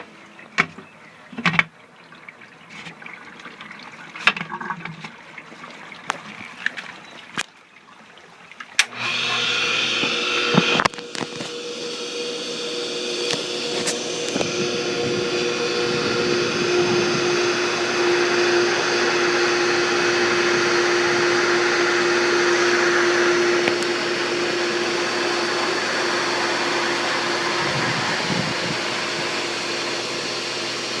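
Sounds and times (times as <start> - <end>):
pool pump motor running: 0.0 - 31.0.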